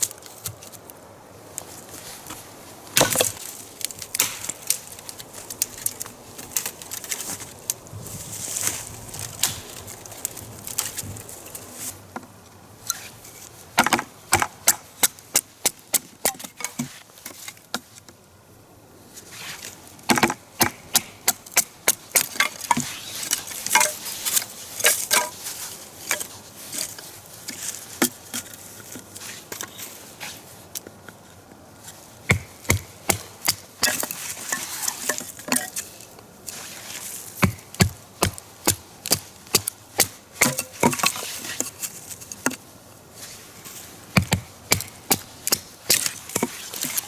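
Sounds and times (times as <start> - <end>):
firewood chopping knocks and cracks: 3.0 - 7.5, 13.8 - 16.9, 20.1 - 25.4, 32.3 - 35.8, 37.4 - 41.7, 44.2 - 47.0.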